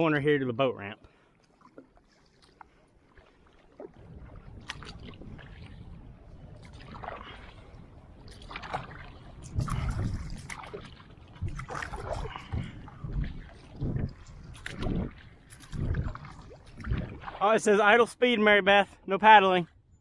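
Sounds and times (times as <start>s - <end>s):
paddle strokes splashing water: 1.0s - 18.2s.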